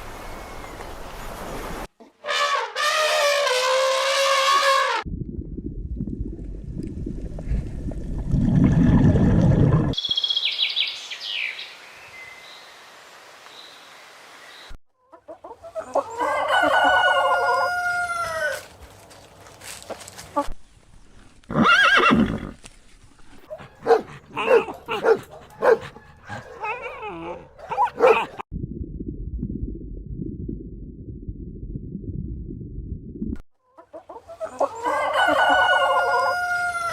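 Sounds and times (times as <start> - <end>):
rooster crowing: 15.9 - 18.7, 34.6 - 36.9
loud low noisy sound: 28.5 - 33.4.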